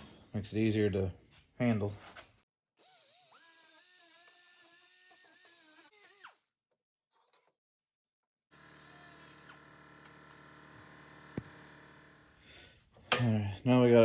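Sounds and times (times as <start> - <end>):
power tool whining: 8.5 - 12.4.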